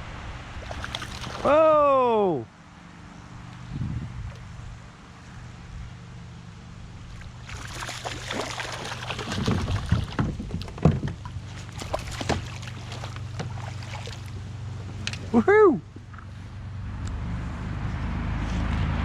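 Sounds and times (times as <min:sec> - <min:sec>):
fish splashing at the surface: 0:00.6 - 0:01.6, 0:07.1 - 0:10.3, 0:11.5 - 0:14.4
knocks against kayak: 0:09.4 - 0:12.6.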